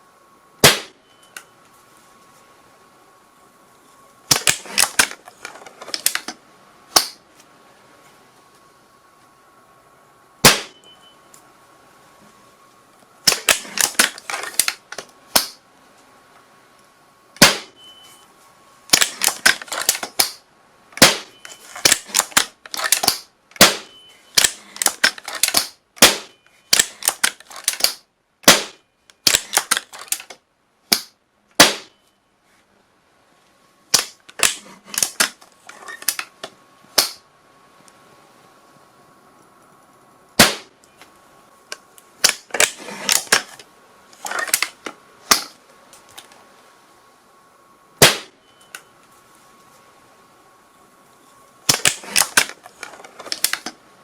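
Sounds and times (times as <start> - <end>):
gunshots: 0.6 - 1.0, 10.4 - 10.8, 17.4 - 17.8, 21.0 - 22.3, 23.0 - 24.5, 27.8 - 29.8, 31.0 - 32.0, 40.4 - 40.8, 48.0 - 48.4.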